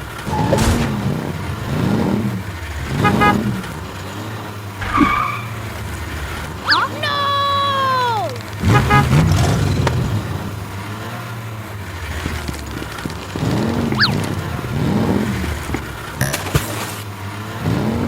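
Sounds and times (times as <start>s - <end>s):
cartoon engine revs: 4.8s - 11.1s.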